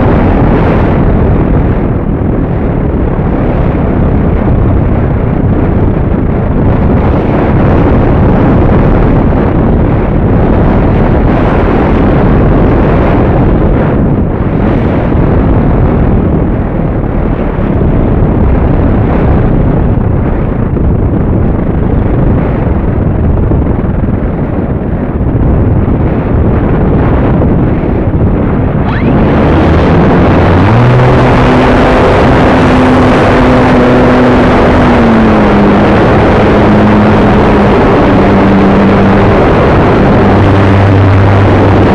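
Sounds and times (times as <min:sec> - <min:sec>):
wind buffeting microphone: 0:00.0 - 0:41.9
electric motor and propeller whine: 0:27.2 - 0:41.9.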